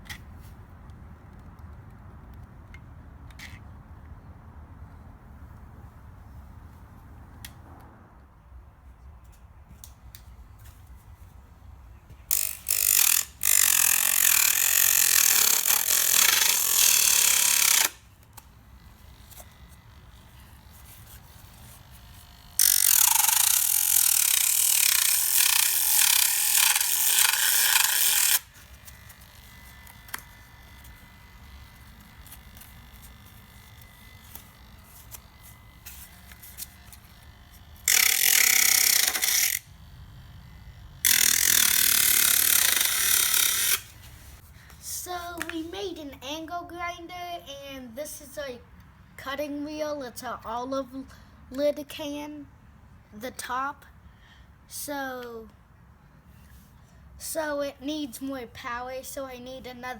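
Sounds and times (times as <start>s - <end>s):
small angle grinder whirring: 12.3s - 44.4s.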